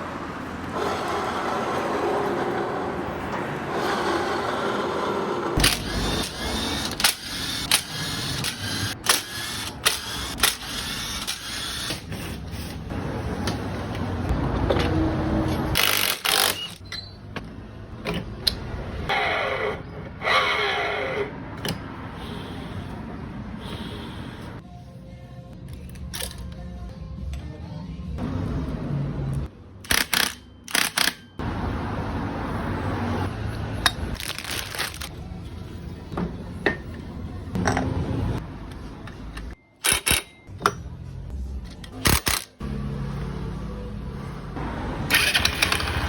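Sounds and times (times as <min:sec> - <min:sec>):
tools clicking and clanking: 0:38.6 - 0:42.6, 0:45.1 - 0:46.0.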